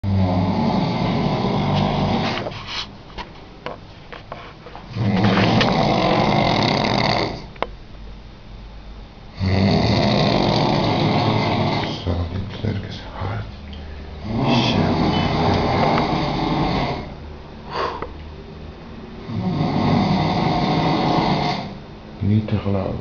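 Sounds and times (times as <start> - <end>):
person snoring loudly: 0.0 - 2.5, 5.0 - 7.5, 9.3 - 12.1, 14.2 - 18.0, 19.2 - 21.8
quiet breathing: 12.8 - 18.2.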